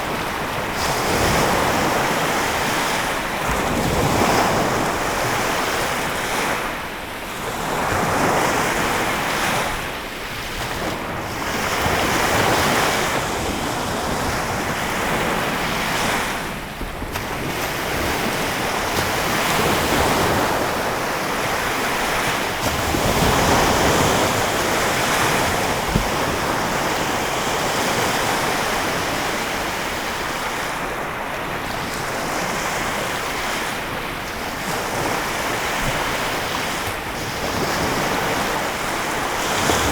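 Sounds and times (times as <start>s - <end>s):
waves breaking on shore: 0.0s - 39.9s
wind buffeting microphone: 10.6s - 39.9s.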